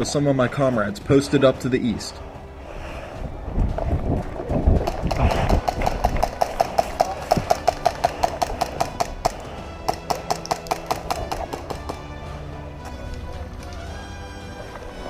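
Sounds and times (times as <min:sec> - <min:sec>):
held low notes: 0:00.0 - 0:15.0
ticking percussion beat: 0:03.8 - 0:12.4.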